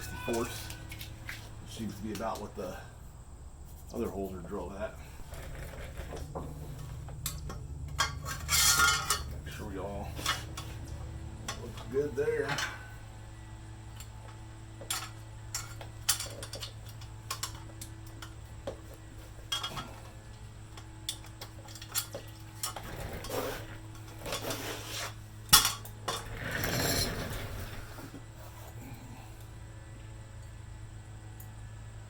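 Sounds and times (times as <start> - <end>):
steady low hum: 0.0 - 32.0
scraping rattle: 3.6 - 13.2, 14.8 - 28.8
metal parts clinking and clanking: 5.5 - 13.1, 13.9 - 18.6, 19.3 - 24.6, 25.5 - 27.4.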